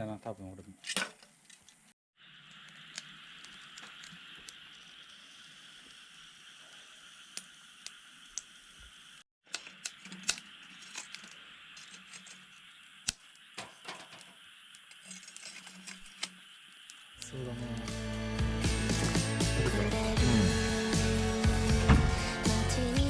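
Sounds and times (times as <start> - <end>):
faint steady hiss: 0.0 - 23.0.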